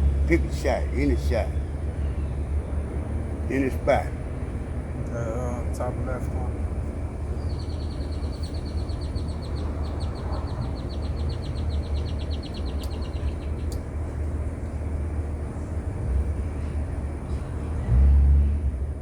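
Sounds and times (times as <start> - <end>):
low outdoor rumble: 0.0 - 19.0
rapid high chirping trill: 7.3 - 13.8
faint sharp clicks: 12.8 - 13.0, 13.7 - 13.9.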